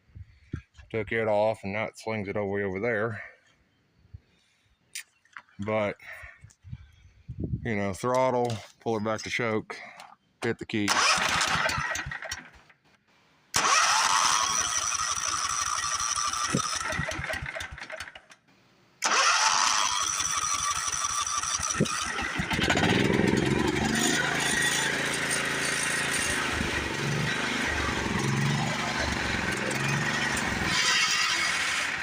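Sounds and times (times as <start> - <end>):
small engine running: 10.9 - 12.6, 13.6 - 18.4, 19.0 - 32.0
starter motor cranking: 10.9 - 12.6, 13.6 - 18.4, 19.0 - 32.0.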